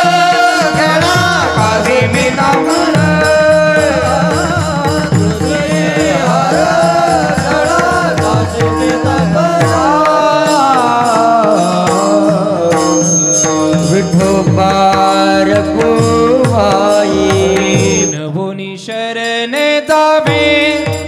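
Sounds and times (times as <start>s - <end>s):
tabla strokes: 0.0s - 18.2s
drone tones: 12.6s - 16.1s, 16.9s - 18.2s.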